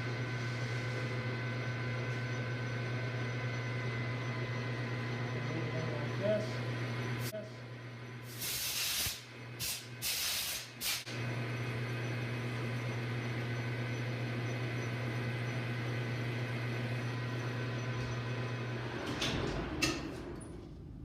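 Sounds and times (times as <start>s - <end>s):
metal lathe humming: 0.0s - 8.2s, 11.1s - 20.4s
loud hiss bursts: 8.3s - 11.1s.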